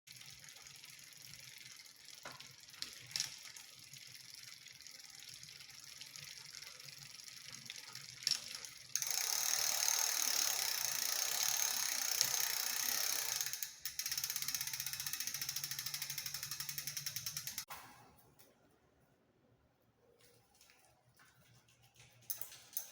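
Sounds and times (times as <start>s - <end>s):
bike chain ticking rattle: 0.1s - 17.7s.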